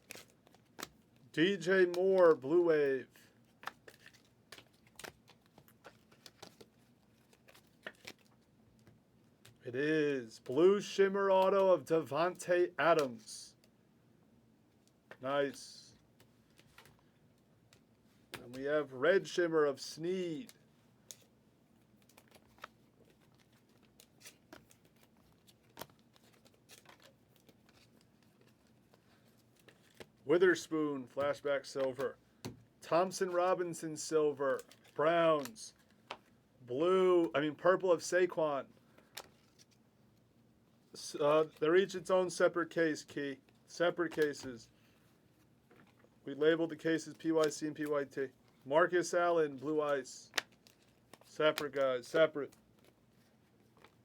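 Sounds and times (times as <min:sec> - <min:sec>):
trading cards being flipped: 0:22.0 - 0:30.2, 0:47.2 - 0:47.9, 0:50.3 - 0:54.0.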